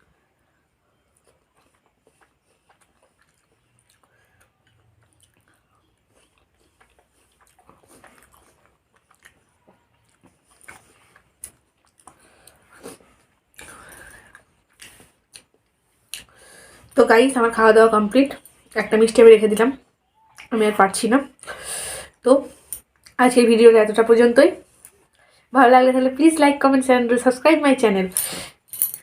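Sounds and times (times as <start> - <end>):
person chewing: 0.9 - 16.8.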